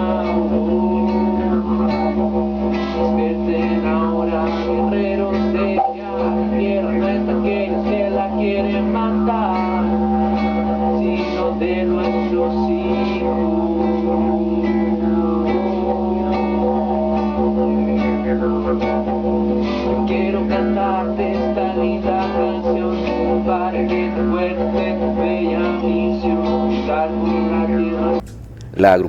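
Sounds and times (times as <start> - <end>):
guitar: 0.0 - 29.0
person singing: 0.0 - 29.0.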